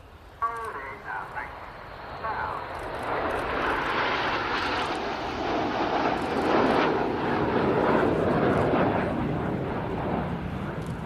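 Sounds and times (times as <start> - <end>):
jets flying past: 0.7 - 11.0.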